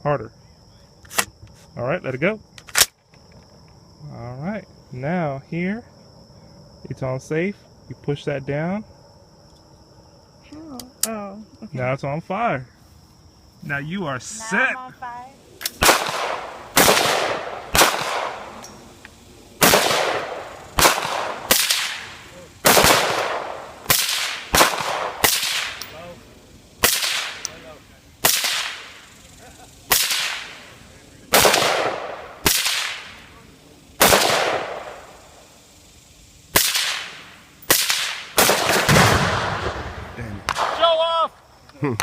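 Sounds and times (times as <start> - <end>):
gunshots with echo: 15.8 - 18.6, 19.6 - 25.8, 31.3 - 33.2, 34.0 - 35.1, 36.6 - 40.8.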